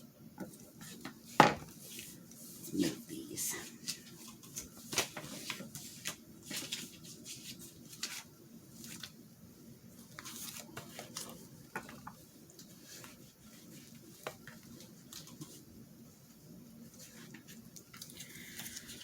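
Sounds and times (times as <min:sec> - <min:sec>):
paper rustling: 0:03.6 - 0:09.2, 0:10.0 - 0:15.7, 0:16.8 - 0:19.0.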